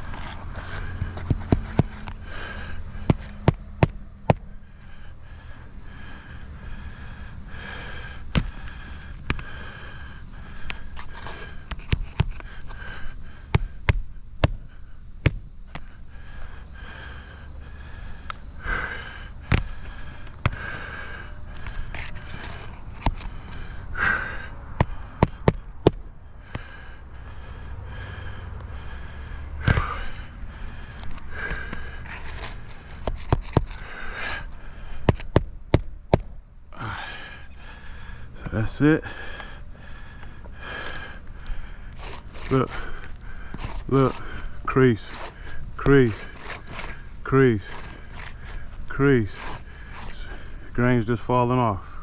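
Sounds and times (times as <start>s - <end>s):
shingle scraping: 10.4s - 13.7s, 18.7s - 26.0s, 30.8s - 35.4s, 40.6s - 51.3s.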